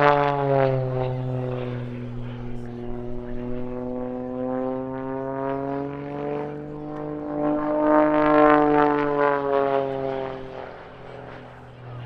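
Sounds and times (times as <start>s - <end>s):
propeller plane droning past: 0.0s - 12.0s.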